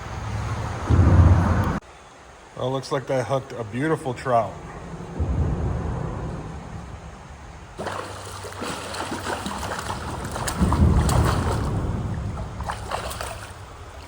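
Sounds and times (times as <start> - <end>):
low rumble: 0.0 - 1.8, 3.6 - 14.0
water splashing around a canoe: 7.8 - 14.0.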